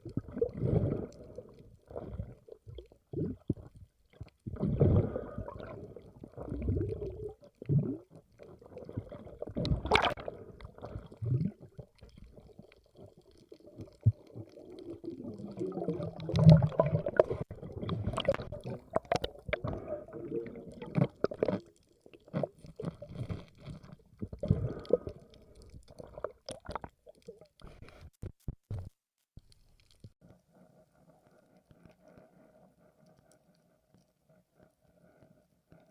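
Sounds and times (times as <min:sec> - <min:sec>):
water sloshing and gurgling: 0:00.0 - 0:28.1.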